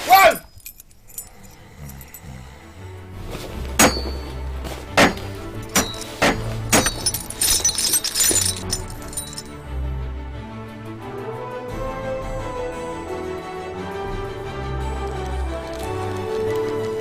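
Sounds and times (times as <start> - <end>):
sharp clinking hits: 0.0 - 2.3, 3.8 - 9.6
glassy jingling rattle: 0.1 - 2.6, 5.4 - 9.6
film score with pulsing bass: 8.4 - 17.0.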